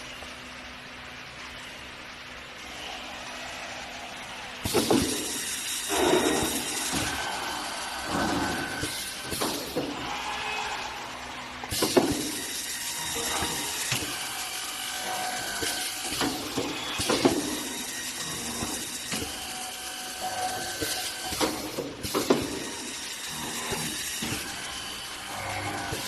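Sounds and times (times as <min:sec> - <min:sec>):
machine whine and hum: 0:00.0 - 0:26.0
machine knocking: 0:04.6 - 0:10.2, 0:11.7 - 0:19.5, 0:20.2 - 0:26.0.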